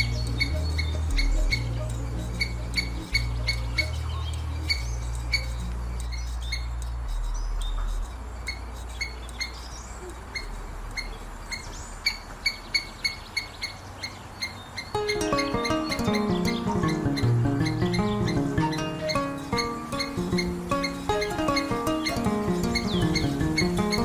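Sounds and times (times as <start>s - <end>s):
squirrel chirping: 0.0s - 24.0s.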